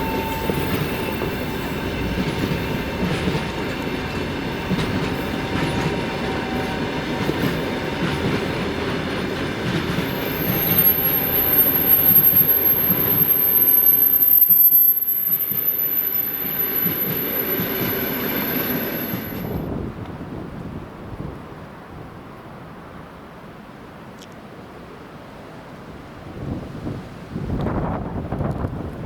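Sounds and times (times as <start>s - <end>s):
high steady whistle: 0.0s - 6.9s, 9.9s - 19.6s
train wheels clacking on rails: 0.0s - 14.2s, 15.3s - 19.7s.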